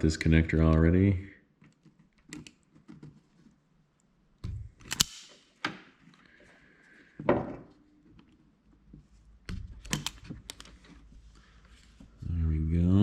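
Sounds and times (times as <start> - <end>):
wire stripper clicks and snaps: 4.8 - 5.3.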